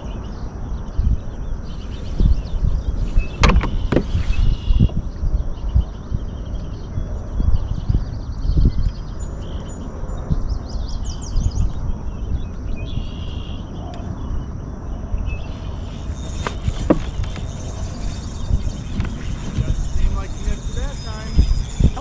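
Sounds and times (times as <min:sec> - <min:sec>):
birds chirping: 0:01.2 - 0:09.8, 0:15.2 - 0:22.0.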